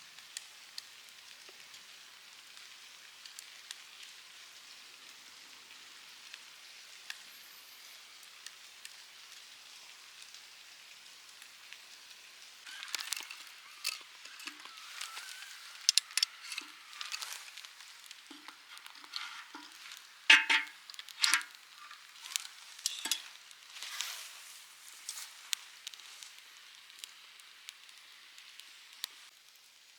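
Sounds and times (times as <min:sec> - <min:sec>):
campfire crackling: 0:00.0 - 0:29.9
sharp pops of fire: 0:12.7 - 0:29.3.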